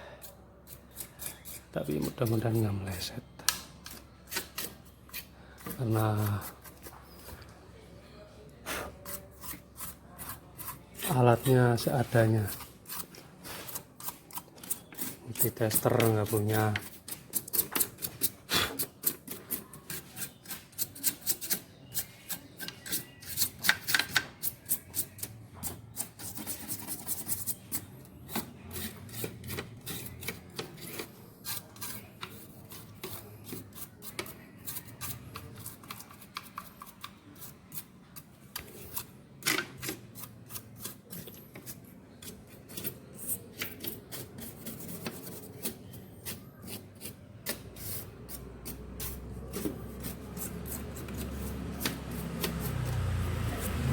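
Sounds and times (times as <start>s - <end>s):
brush scrubbing: 8.9s - 21.2s, 42.6s - 53.9s.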